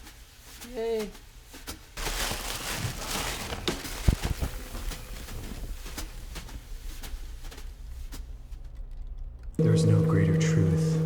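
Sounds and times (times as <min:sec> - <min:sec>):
paper crackling and rustling: 0:00.6 - 0:09.2.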